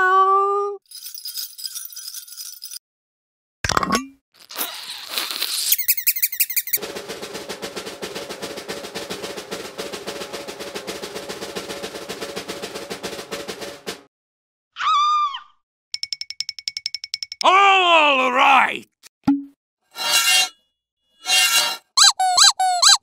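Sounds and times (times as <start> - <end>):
rapid drum-roll-like rattle: 6.8 - 14.1.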